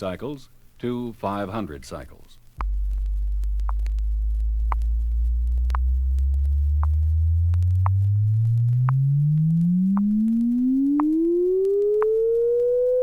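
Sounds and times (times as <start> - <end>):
rising sine tone sweep: 2.6 - 13.0.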